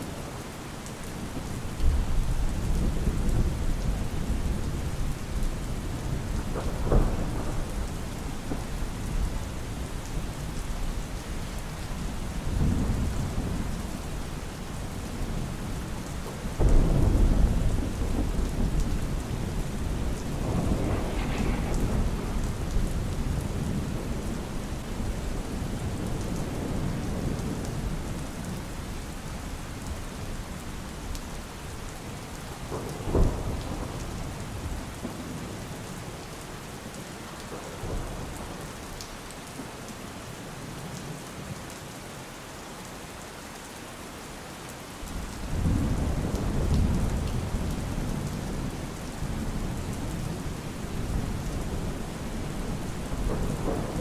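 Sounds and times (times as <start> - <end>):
steady rain: 0.0 - 54.0
thunder: 5.8 - 9.6, 16.2 - 28.6, 32.6 - 35.5, 45.2 - 54.0.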